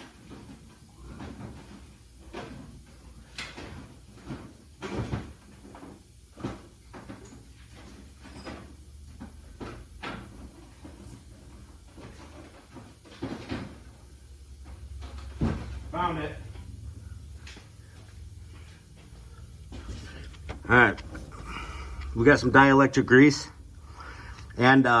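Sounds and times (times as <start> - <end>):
objects knocking and clattering: 0.2 - 22.6
cabinet or drawer noises: 1.1 - 13.9, 19.0 - 22.5.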